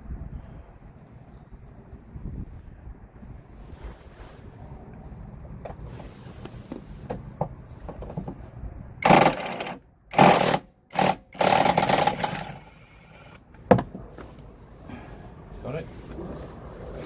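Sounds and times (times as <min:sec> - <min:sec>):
impact wrench hammering: 0:09.0 - 0:12.6.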